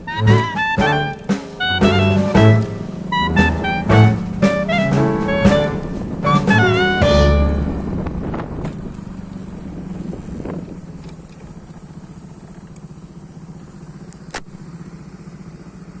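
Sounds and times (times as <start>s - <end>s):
vehicle engine hum: 0.0s - 16.0s
road or wind noise: 7.4s - 14.6s.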